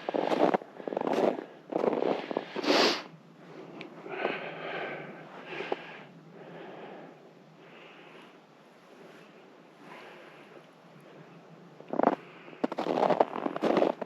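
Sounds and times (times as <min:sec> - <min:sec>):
footsteps crunching in snow: 0:00.0 - 0:03.0, 0:12.0 - 0:14.0.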